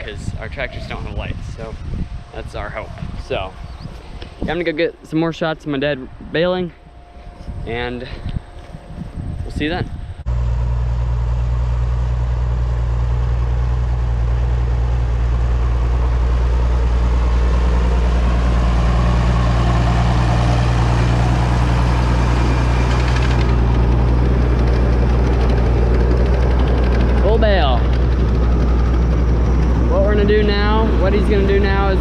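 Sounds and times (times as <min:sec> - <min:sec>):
tractor engine running loud: 0:10.2 - 0:32.0.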